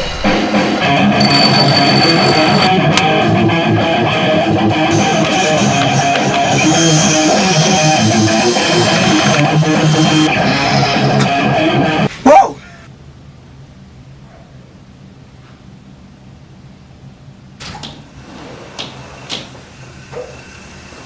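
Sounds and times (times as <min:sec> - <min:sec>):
strummed electric guitar music: 0:00.2 - 0:12.1.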